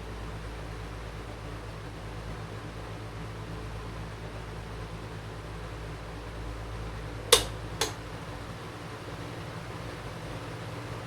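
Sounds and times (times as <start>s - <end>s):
fan air rushing: 0.0s - 11.0s
fan motor hum: 0.0s - 11.0s.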